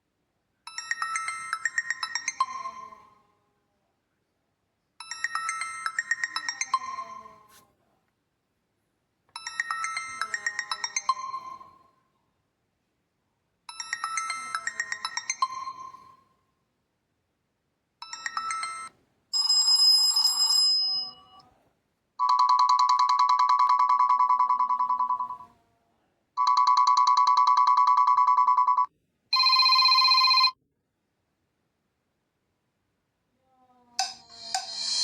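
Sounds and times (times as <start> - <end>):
phone ringtone chiming notes: 18.0 - 21.4, 22.2 - 25.4.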